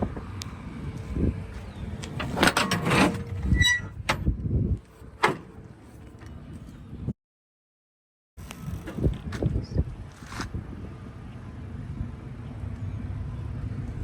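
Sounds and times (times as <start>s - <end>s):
metal clanking and banging: 2.1s - 4.3s.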